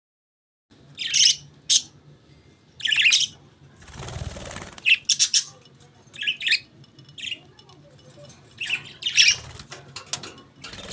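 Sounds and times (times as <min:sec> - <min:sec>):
budgerigars chirping: 0:02.8 - 0:03.4, 0:04.8 - 0:05.6, 0:08.6 - 0:09.5
wings flapping whoosh: 0:03.8 - 0:04.8.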